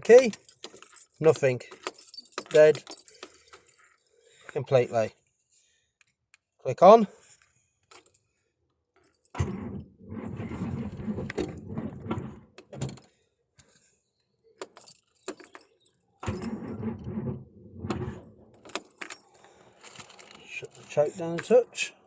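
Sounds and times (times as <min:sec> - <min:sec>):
car engine cranking on starter motor: 0:09.4 - 0:12.6, 0:16.2 - 0:18.7.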